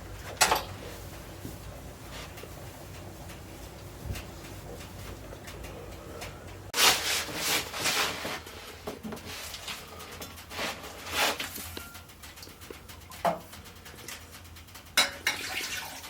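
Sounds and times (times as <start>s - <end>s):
low steady hum: 0.0s - 16.0s
rustling rubbing noises: 6.8s - 11.8s.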